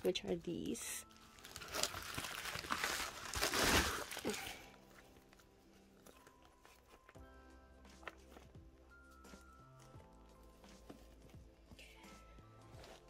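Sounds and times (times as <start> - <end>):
faint background music: 0.0 - 13.0
plastic packaging crinkling and tearing: 1.0 - 7.2.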